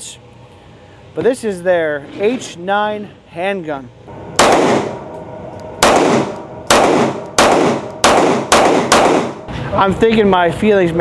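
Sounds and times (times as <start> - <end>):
pistol shots: 4.2 - 9.5.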